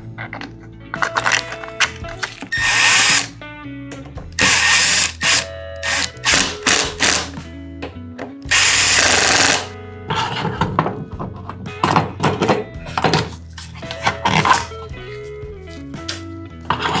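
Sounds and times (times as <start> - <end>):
background music: 0.0 - 17.0
workshop tool bursts: 2.5 - 3.3, 4.4 - 7.4, 8.5 - 9.7.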